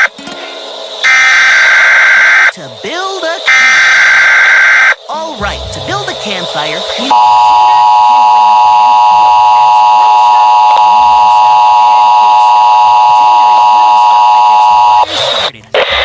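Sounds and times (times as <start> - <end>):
loud two-tone alarm: 1.0 - 2.5, 3.5 - 5.0, 7.1 - 15.1.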